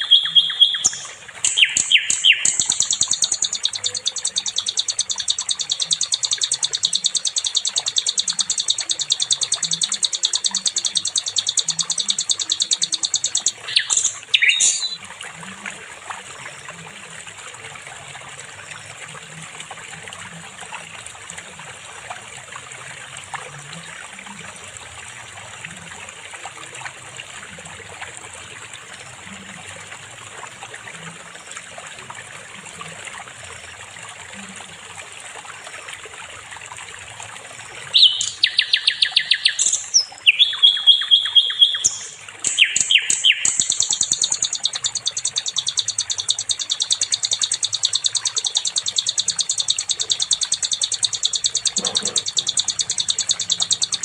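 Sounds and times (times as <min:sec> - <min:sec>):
bird trilling song: 0:00.0 - 0:15.0, 0:37.8 - 0:54.0
water trickling: 0:00.0 - 0:54.0.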